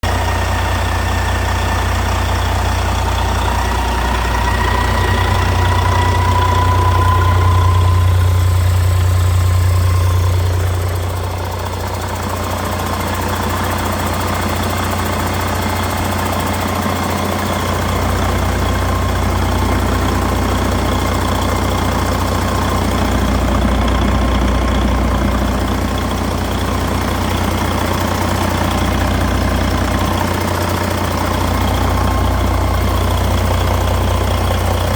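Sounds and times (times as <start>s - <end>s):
diesel engine running: 0.0s - 34.9s
faint engine whine: 0.0s - 34.9s.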